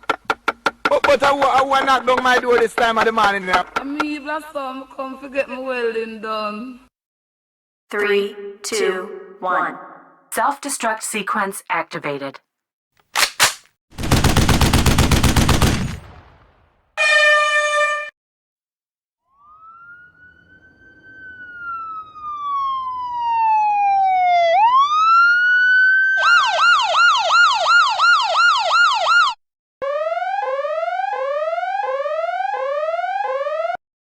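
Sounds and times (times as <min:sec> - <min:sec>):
gunfire burst: 0:13.2 - 0:16.6
horn blast: 0:17.0 - 0:18.1
electronic siren wailing: 0:19.3 - 0:33.8.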